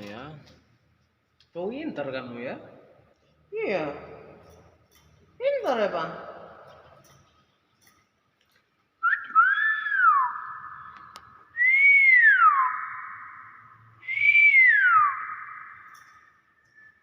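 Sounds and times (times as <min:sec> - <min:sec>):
myna whistling: 0:09.0 - 0:17.0.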